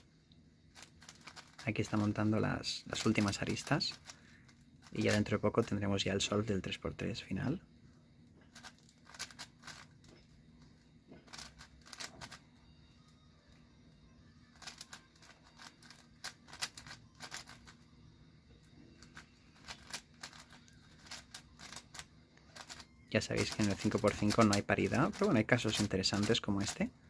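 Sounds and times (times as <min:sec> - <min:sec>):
speed cube clicking turns: 0:00.8 - 0:02.0, 0:08.5 - 0:09.9, 0:11.3 - 0:12.4, 0:14.5 - 0:17.7, 0:19.6 - 0:26.8.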